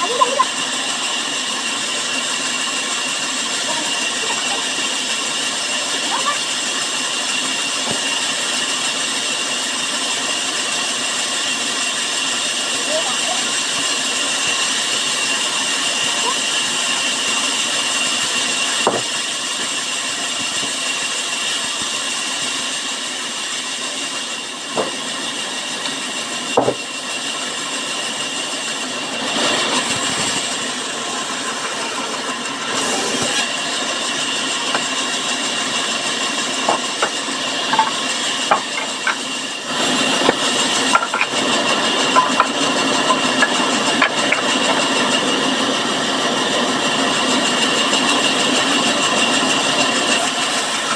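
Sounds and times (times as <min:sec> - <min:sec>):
sawmill saw cutting timber: 0:00.0 - 0:50.9.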